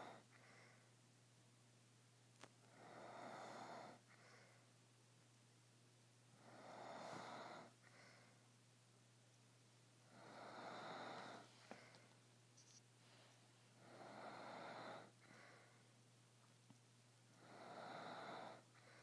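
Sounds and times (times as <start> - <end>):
man snoring faintly: 0.0 - 0.6, 2.6 - 4.5, 6.4 - 8.3, 10.0 - 12.0, 13.8 - 15.8, 17.3 - 19.0.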